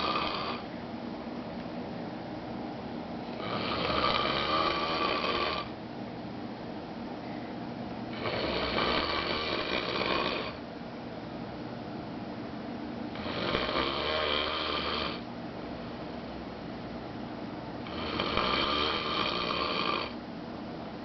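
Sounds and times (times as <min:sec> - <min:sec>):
man snoring loudly: 0:00.0 - 0:00.7, 0:03.4 - 0:05.7, 0:08.1 - 0:10.6, 0:13.1 - 0:15.2, 0:17.8 - 0:20.2.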